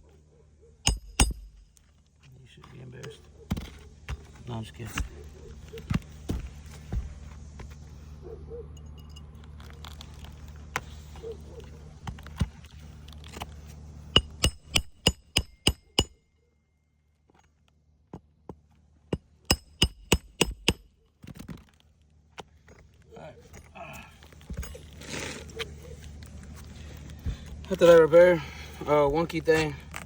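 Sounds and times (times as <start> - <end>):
steady low hum: 0.0 - 16.2, 18.1 - 21.0
sharp metallic clinks: 0.9 - 1.7, 8.8 - 9.4.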